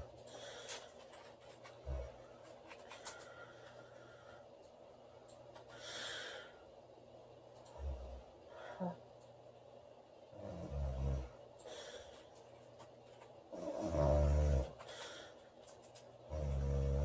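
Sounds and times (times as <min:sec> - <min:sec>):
noisy breath: 0:00.0 - 0:06.8, 0:11.2 - 0:12.6, 0:13.6 - 0:16.0
faint clicks: 0:07.5 - 0:07.8
woman snoring faintly: 0:10.3 - 0:11.4, 0:13.5 - 0:14.8, 0:16.3 - 0:17.0.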